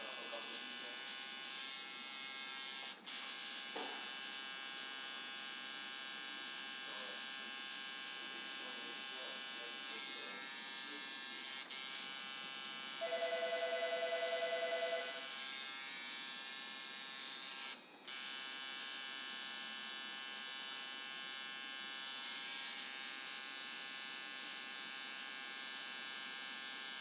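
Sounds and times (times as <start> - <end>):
tattoo machine buzzing: 0.1 - 27.0
extra tone: 13.0 - 15.3.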